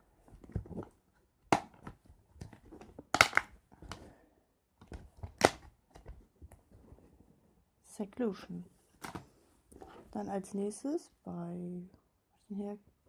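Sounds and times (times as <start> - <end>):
plastic case clicks: 1.5 - 4.0, 4.8 - 6.2, 9.0 - 9.3.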